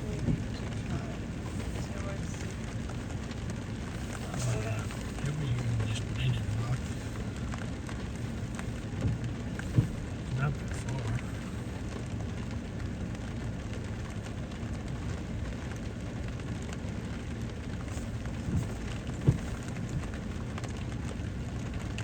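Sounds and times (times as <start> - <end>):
rain falling on a vehicle: 0.0 - 22.0
soft knocks: 8.9 - 10.2, 18.4 - 20.2.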